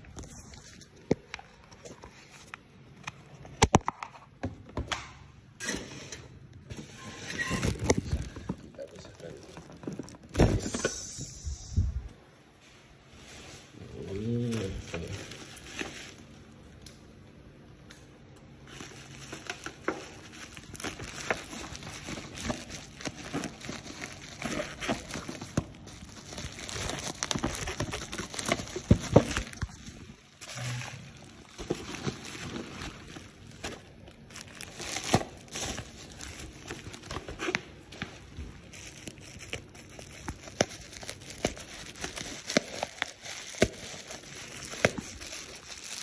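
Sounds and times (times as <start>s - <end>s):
packaging crinkling and rustling: 6.6s - 10.9s, 13.1s - 16.9s, 17.9s - 46.0s.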